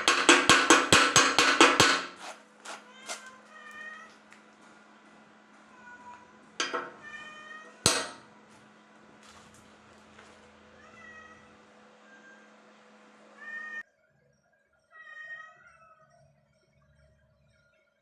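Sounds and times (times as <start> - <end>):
cat meowing: 10.8 - 11.5.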